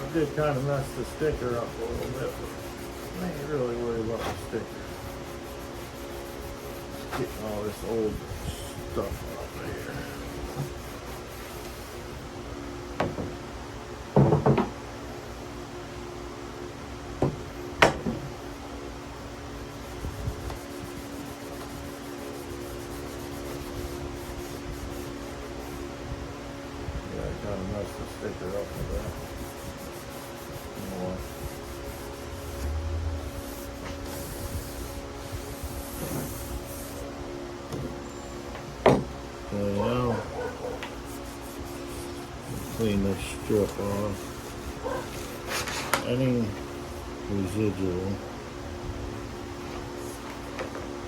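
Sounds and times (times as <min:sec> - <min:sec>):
scratchy rubbing on metal rail: 0:00.0 - 0:12.0, 0:19.8 - 0:25.9, 0:27.7 - 0:37.0, 0:39.7 - 0:46.1
steady hum: 0:00.0 - 0:51.0.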